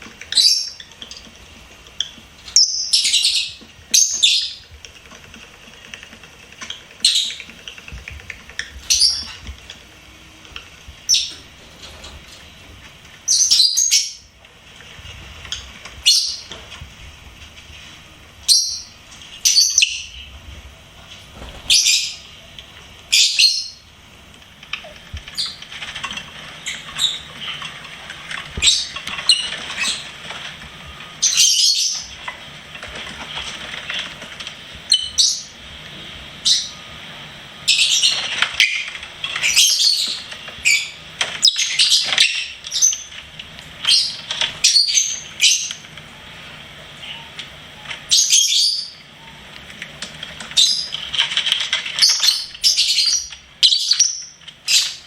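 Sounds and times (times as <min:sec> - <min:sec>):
lovebirds chirping: 0:00.0 - 0:04.8, 0:06.6 - 0:10.4, 0:11.0 - 0:14.4, 0:15.4 - 0:16.8, 0:18.4 - 0:20.4, 0:21.1 - 0:24.0, 0:24.6 - 0:32.6, 0:37.6 - 0:49.6, 0:50.4 - 0:55.0.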